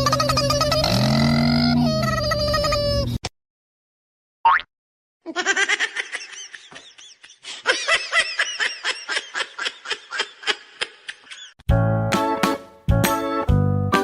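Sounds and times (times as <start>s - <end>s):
high-pitched laughter: 0.0s - 3.2s, 5.3s - 11.6s.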